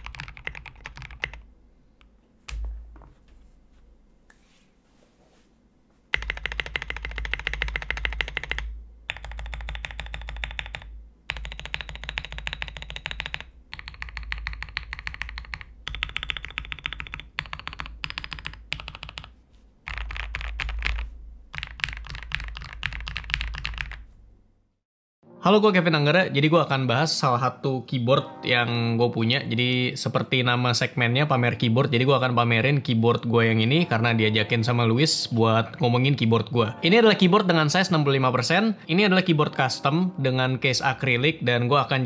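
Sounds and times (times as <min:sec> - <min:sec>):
mechanical keyboard typing: 0:00.0 - 0:01.4, 0:06.1 - 0:19.3, 0:19.9 - 0:24.0.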